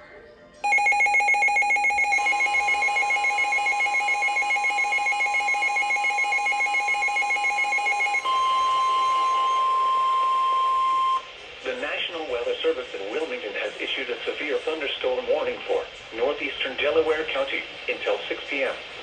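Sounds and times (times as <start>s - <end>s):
pulsing two-pitch alert beep: 0.6s - 11.3s
steady warning alarm tone: 0.6s - 12.0s.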